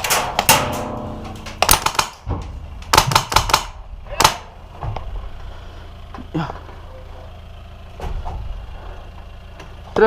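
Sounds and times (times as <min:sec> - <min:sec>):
airsoft gun shots: 0:01.6 - 0:02.2, 0:02.9 - 0:04.5.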